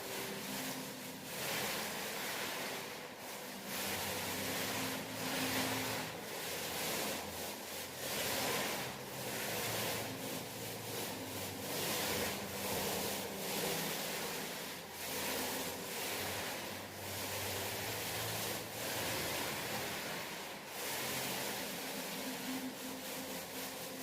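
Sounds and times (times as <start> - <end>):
paint roller rasping on wall: 0.0 - 24.0.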